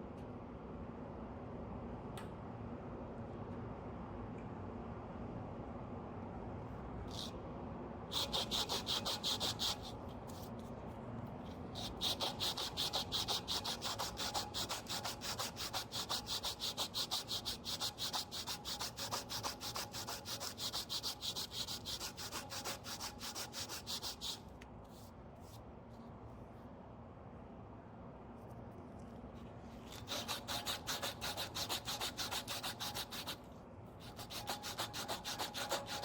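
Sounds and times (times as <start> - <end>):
hand sanding strokes: 8.1 - 10.5, 11.8 - 25.6, 29.9 - 36.0.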